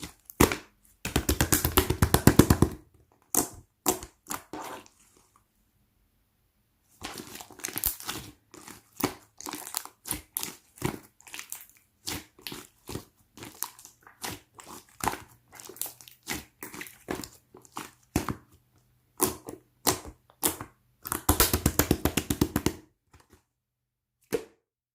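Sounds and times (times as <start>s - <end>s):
slime with beads squished by hand: 7.0s - 18.5s.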